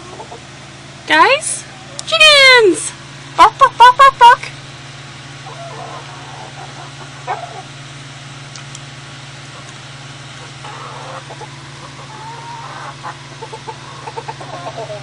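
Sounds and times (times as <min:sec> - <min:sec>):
chickens clucking: 0:00.0 - 0:00.8, 0:05.3 - 0:15.0
steady low hum: 0:00.0 - 0:15.0.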